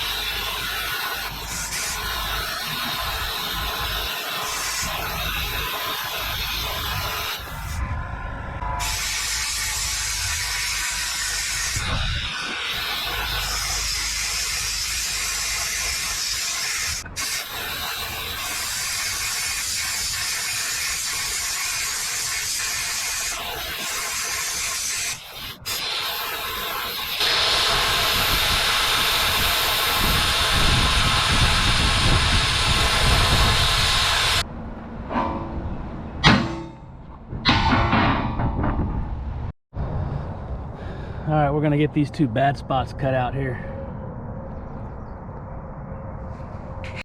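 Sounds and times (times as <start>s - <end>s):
plasma cutter hissing: 0.0s - 7.8s, 8.8s - 34.4s.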